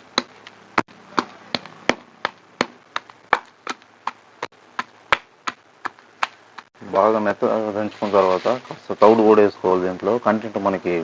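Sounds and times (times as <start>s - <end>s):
pestle pounding in stone mortar: 0.0s - 6.7s.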